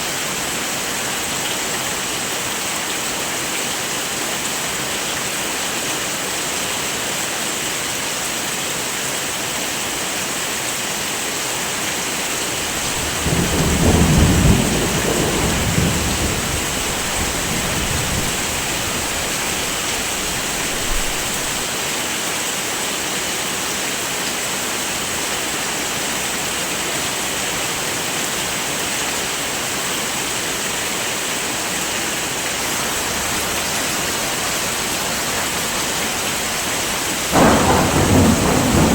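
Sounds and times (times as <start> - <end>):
heavy rain: 0.0 - 38.9
thunder rumbling: 12.4 - 21.7, 32.7 - 38.9.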